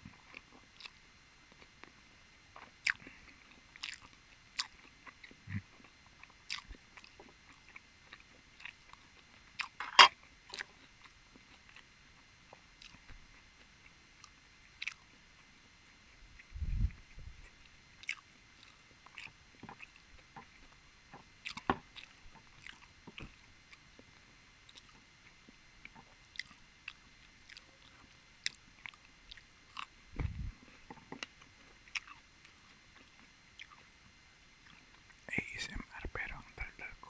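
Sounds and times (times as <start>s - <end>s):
chewing and biting: 0.0s - 2.0s, 2.6s - 35.6s
low thumps: 30.2s - 30.6s.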